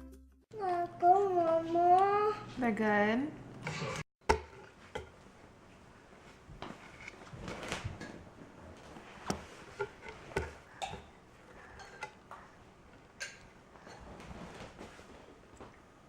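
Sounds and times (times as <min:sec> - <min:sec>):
dishes and utensils clinking: 0:09.2 - 0:14.8.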